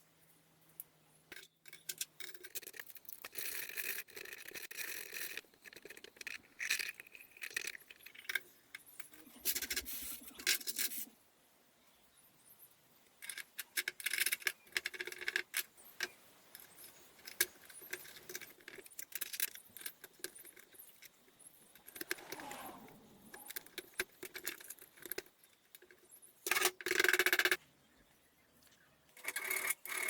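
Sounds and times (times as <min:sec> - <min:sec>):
metal scrape: 0:21.6 - 0:24.0.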